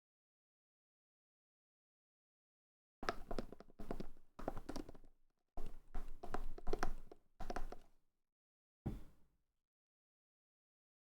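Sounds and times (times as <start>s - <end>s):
objects thudding on a desk: 8.9s - 9.2s.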